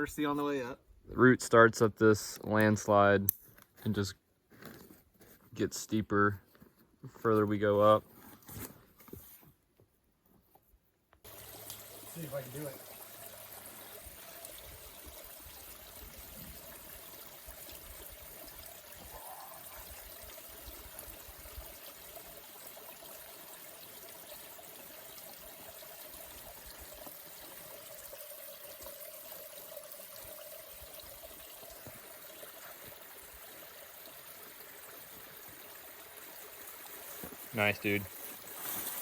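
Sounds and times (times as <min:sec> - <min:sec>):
water trickling: 0:11.3 - 0:39.0.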